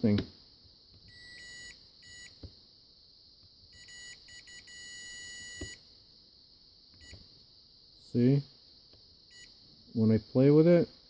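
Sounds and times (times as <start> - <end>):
continuity tester beeps: 1.1 - 2.4, 3.7 - 5.8, 7.0 - 7.2, 9.3 - 9.6.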